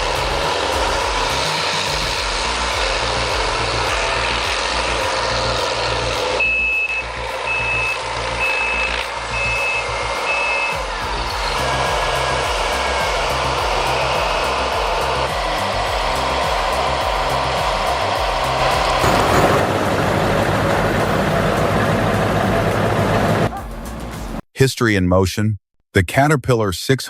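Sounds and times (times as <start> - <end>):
heavy diesel machines rumbling: 0.0 - 24.4
reversing alarm beeps: 6.4 - 10.8.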